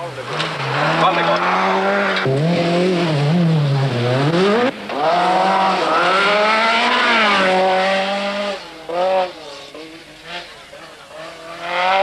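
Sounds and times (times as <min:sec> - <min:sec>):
rally car engine revving: 0:00.0 - 0:12.0.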